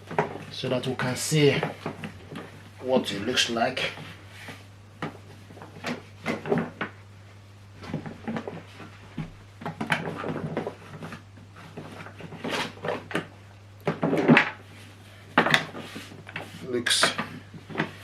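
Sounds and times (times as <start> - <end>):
rubbing and scraping on plastic: 0.0 - 18.0.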